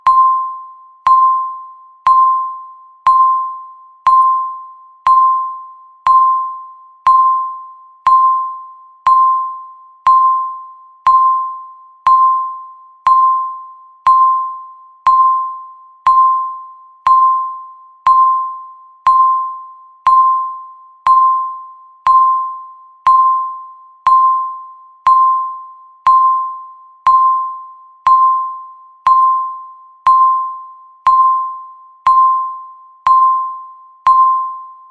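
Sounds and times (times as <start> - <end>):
bell-like timer ticks: 0.0 - 34.9.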